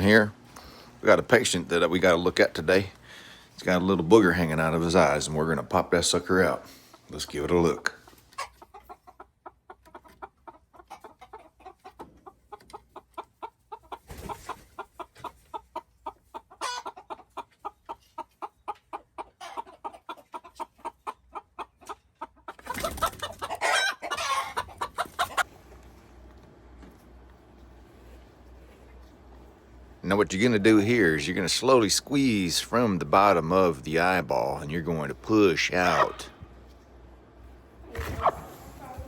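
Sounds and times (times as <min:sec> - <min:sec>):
chicken clucking: 0:03.7 - 0:31.4, 0:34.1 - 0:36.9.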